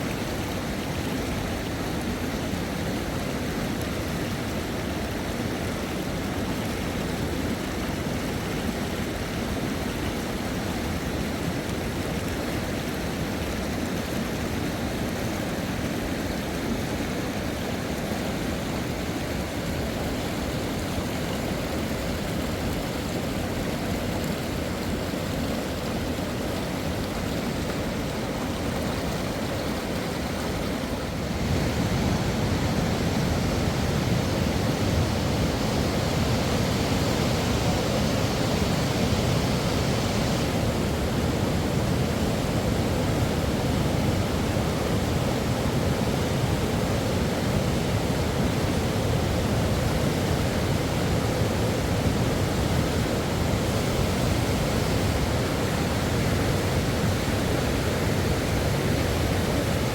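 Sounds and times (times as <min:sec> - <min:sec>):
river water rushing: 0:00.0 - 0:59.9.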